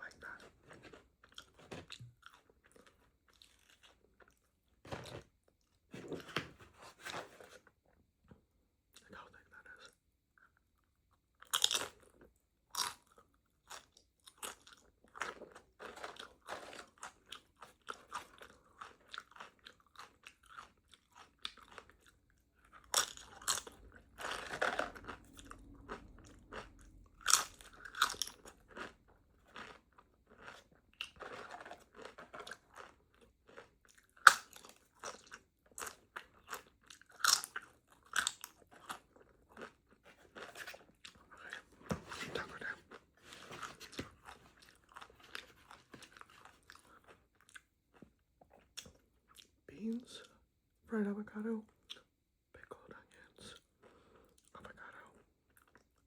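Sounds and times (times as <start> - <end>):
chips crunching: 15.2 - 36.0.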